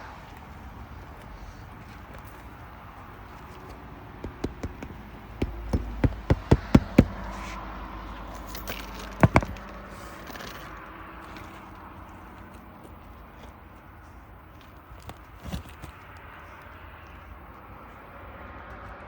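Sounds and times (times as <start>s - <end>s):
hammer striking nails on roof: 4.2s - 7.4s, 9.2s - 9.6s.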